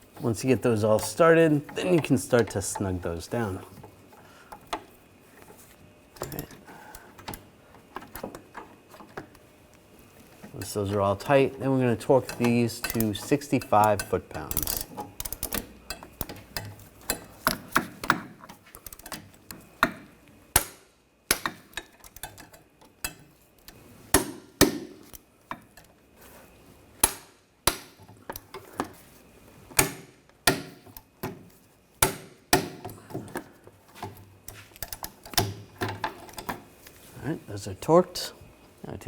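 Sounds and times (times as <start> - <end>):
metallic wrench clicks: 12.2 - 17.2.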